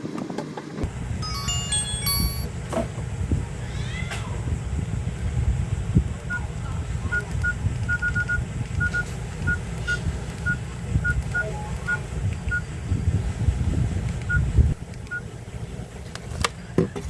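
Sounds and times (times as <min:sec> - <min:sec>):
phone keypad beeps: 0:01.2 - 0:02.5, 0:07.1 - 0:12.6, 0:14.3 - 0:14.5.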